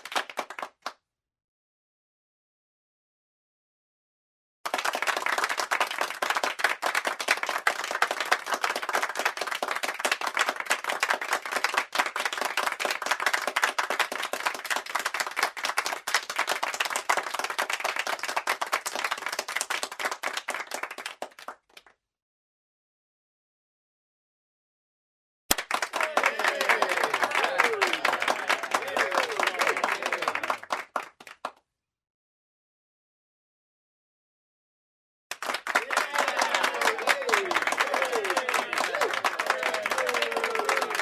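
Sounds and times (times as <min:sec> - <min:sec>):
group applause: 0:00.0 - 0:01.0, 0:04.7 - 0:21.9, 0:25.5 - 0:31.6, 0:35.3 - 0:41.0.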